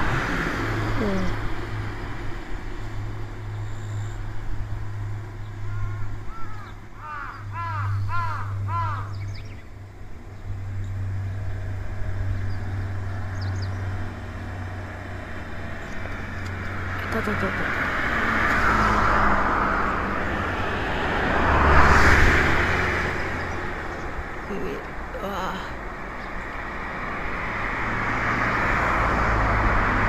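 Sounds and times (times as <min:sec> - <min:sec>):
low hum: 0:00.0 - 0:28.1
crow cawing: 0:05.6 - 0:09.2.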